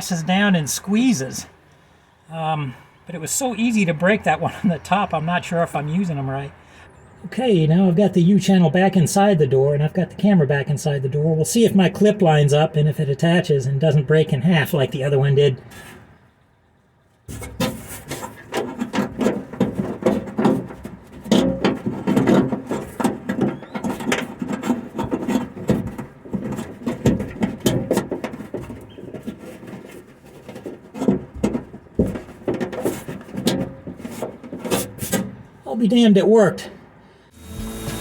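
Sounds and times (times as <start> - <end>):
metal channel scraping inside door: 17.3 - 30.0
small knocks: 17.3 - 35.4.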